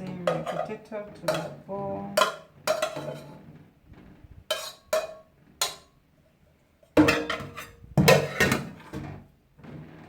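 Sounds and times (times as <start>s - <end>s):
utensils and dishes clattering: 0.0s - 3.4s, 4.5s - 5.9s, 7.0s - 9.0s.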